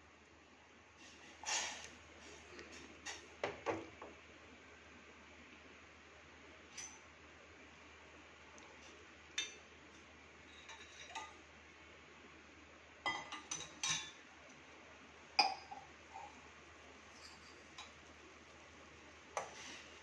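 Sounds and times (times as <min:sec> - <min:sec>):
metal utensils clinking on pot: 0:13.1 - 0:14.2, 0:17.1 - 0:18.0.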